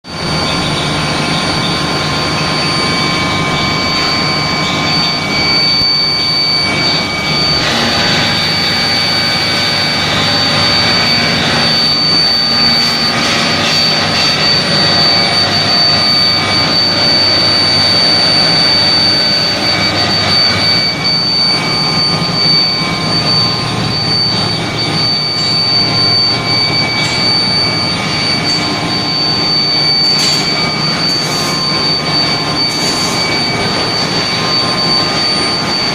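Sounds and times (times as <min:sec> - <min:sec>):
machine high-pitched whine: 0:00.0 - 0:35.9
machine broad roar: 0:02.2 - 0:25.1.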